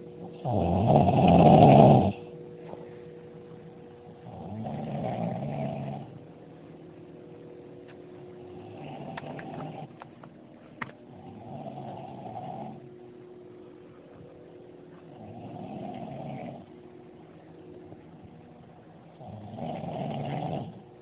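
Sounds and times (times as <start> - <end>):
heavy snoring: 0.3 - 2.3, 4.2 - 6.2, 8.5 - 10.0, 11.1 - 12.9, 15.1 - 16.7, 19.1 - 20.9.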